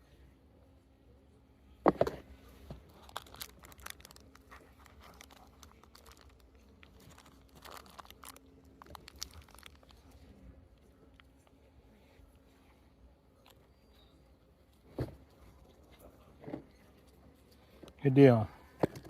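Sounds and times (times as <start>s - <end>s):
small handling clicks and crackles: 2.9s - 11.6s.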